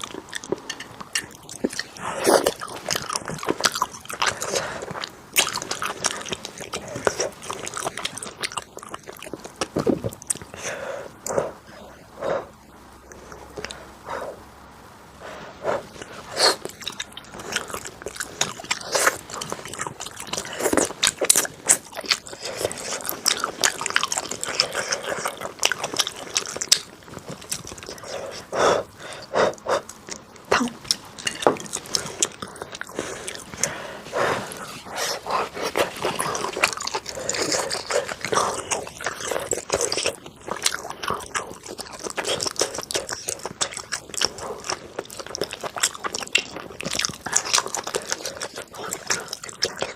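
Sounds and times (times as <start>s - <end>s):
chewing with crisp crunches: 0.0s - 14.4s, 15.2s - 49.9s.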